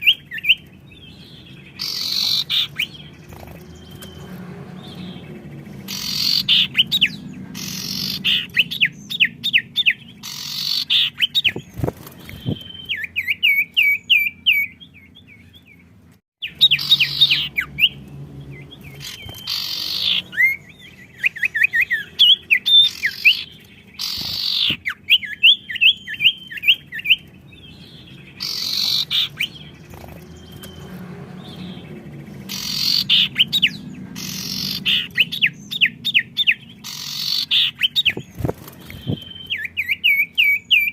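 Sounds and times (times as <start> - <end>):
songbirds chirping and singing: 0.0 - 40.9
harsh loud bird bursts: 5.9 - 8.8, 10.2 - 13.5, 21.2 - 26.8, 32.5 - 35.3, 36.8 - 39.8.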